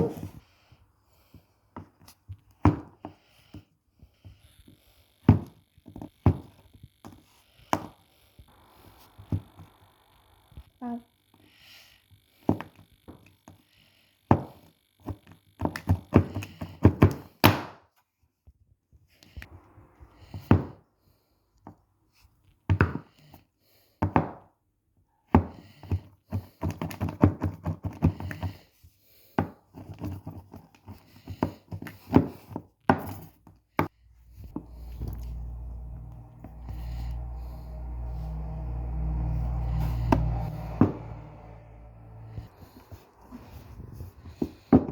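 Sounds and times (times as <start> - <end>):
low rumble: 34.2 - 44.4.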